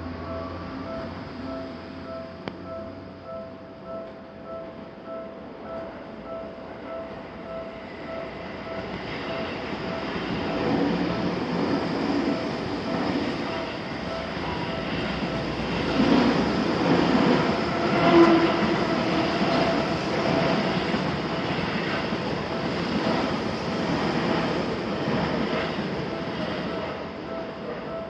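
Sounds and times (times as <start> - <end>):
crossing warning bell dinging: 0.0 - 28.0
train wheels on rails: 7.0 - 28.0.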